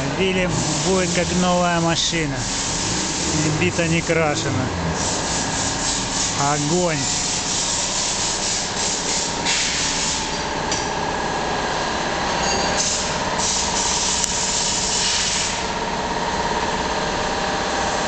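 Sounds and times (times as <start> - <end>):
constant hum: 0.0 - 7.7
spray hissing: 0.5 - 10.2.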